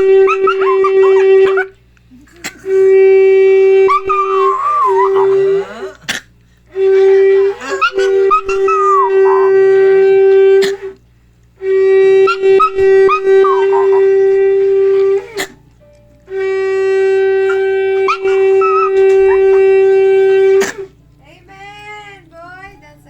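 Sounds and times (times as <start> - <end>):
dog howling: 0.0 - 1.8, 2.6 - 11.0, 11.6 - 15.6, 16.2 - 21.0
shofar blasts: 0.0 - 1.8, 2.6 - 6.0, 6.7 - 11.0, 11.6 - 15.6, 16.2 - 21.0.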